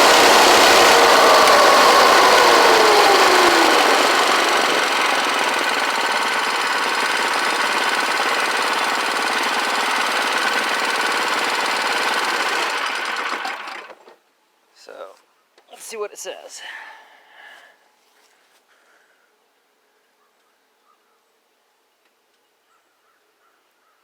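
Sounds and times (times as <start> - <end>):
small engine slowing then idling: 0.0 - 14.2.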